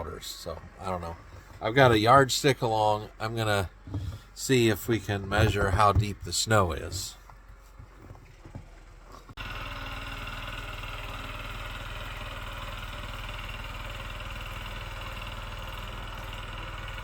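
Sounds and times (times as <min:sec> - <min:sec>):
small engine running: 0:08.5 - 0:17.0.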